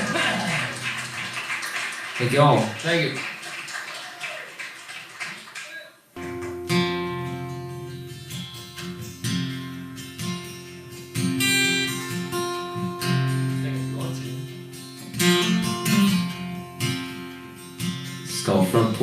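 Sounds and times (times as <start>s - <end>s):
acoustic guitar strumming: 0.0s - 2.4s, 6.2s - 19.0s.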